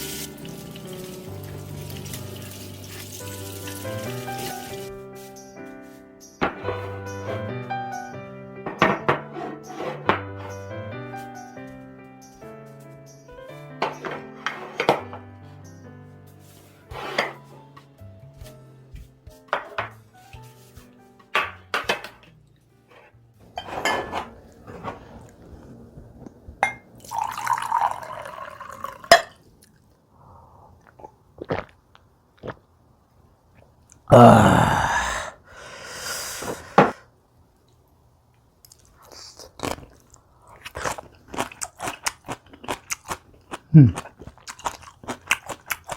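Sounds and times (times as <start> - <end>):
dishes and utensils clinking: 13.8 - 15.3, 16.9 - 17.6, 19.5 - 20.0, 22.9 - 25.0.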